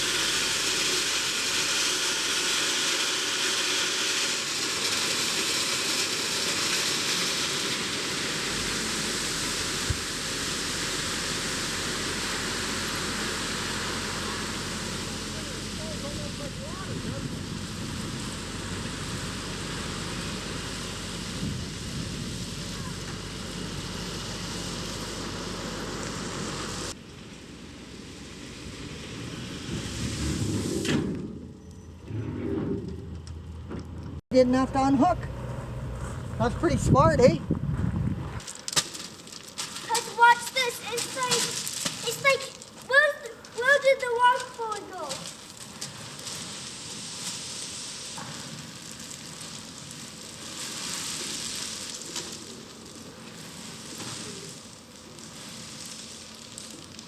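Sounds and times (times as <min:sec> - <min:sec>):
rocks and dirt pouring out: 0:00.0 - 0:31.6, 0:38.4 - 0:57.0
engine rumble: 0:00.0 - 0:57.0
outdoor machinery noise: 0:00.0 - 0:57.0
wind on microphone: 0:21.3 - 0:22.8, 0:36.6 - 0:38.4.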